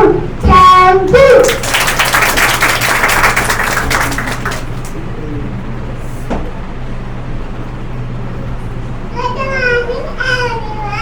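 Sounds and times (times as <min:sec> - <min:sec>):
steady low hum: 0:00.0 - 0:11.0
audience applauding: 0:01.4 - 0:05.0.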